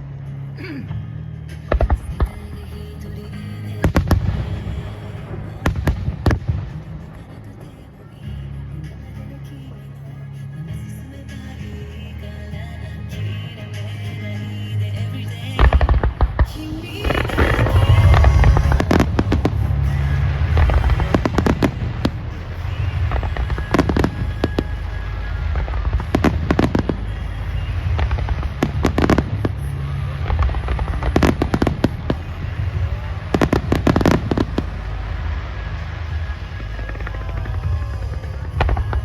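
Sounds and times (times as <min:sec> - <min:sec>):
deep rumble of explosions: 0:01.6 - 0:07.6, 0:15.6 - 0:39.0
fireworks bangs: 0:15.6 - 0:39.0.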